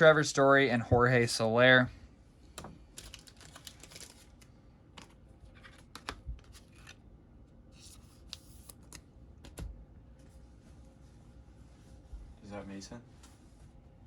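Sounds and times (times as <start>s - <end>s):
cards clicking and rustling: 2.6s - 7.0s.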